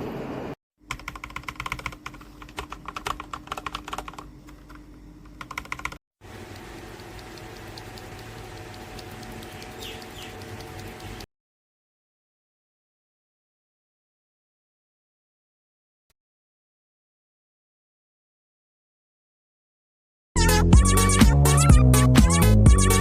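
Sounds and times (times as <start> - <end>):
mechanical keyboard keystroke clacks: 0.9 - 6.0
steady hum: 1.8 - 11.2.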